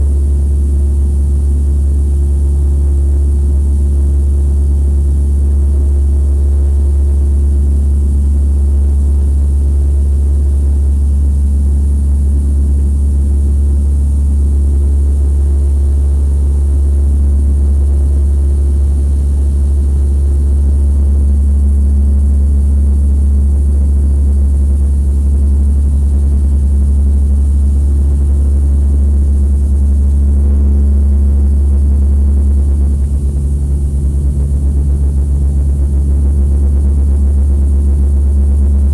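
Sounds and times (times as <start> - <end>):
airliner engines droning: 32.6 - 36.0.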